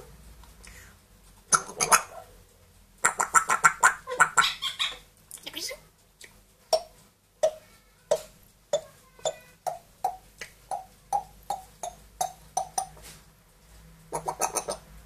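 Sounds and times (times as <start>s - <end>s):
parrot popping clicks: 6.2s - 13.0s.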